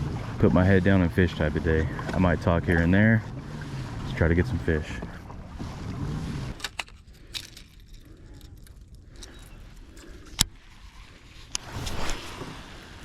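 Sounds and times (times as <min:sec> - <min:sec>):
fishing gear clicking and knocking: 0:06.5 - 0:10.5.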